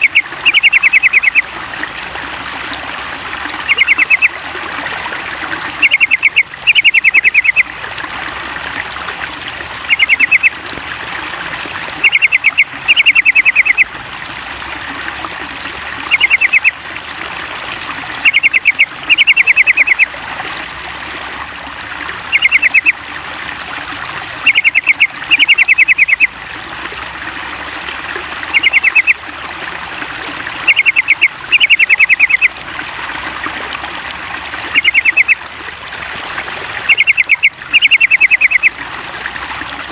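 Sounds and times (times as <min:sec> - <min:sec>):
bulbul calling: 0:00.0 - 0:01.5, 0:03.6 - 0:04.4, 0:05.8 - 0:07.7, 0:09.9 - 0:10.6, 0:12.0 - 0:13.9, 0:16.1 - 0:16.8, 0:18.2 - 0:20.1, 0:22.3 - 0:22.9, 0:24.4 - 0:26.3, 0:28.5 - 0:29.2, 0:30.6 - 0:32.5, 0:34.7 - 0:35.4, 0:36.8 - 0:38.8
trickling water: 0:00.0 - 0:39.9.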